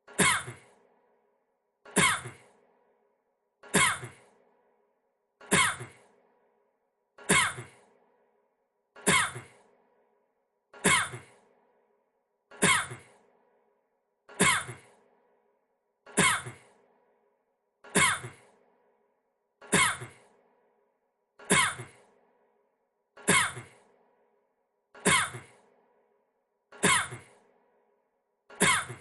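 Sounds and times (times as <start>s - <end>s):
man coughing: 23.2s - 23.7s.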